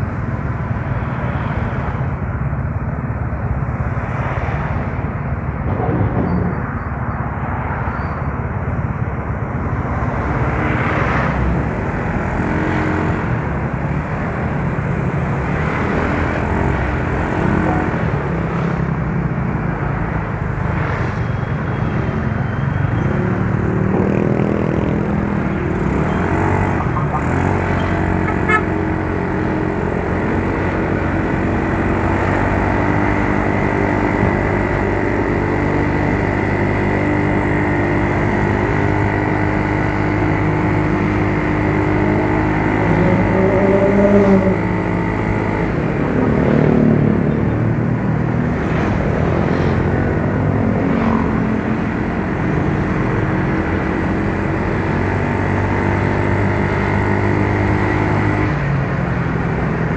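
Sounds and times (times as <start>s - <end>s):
wind and road noise: 0.0s - 59.9s
scooter engine running: 25.6s - 47.7s.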